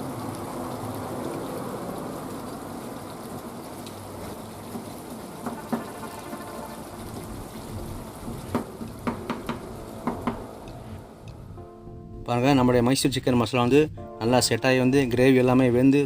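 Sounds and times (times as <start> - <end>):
gravy simmering and sizzling: 0.0 - 11.6
sharp pops and clicks: 5.4 - 7.4, 8.2 - 11.4.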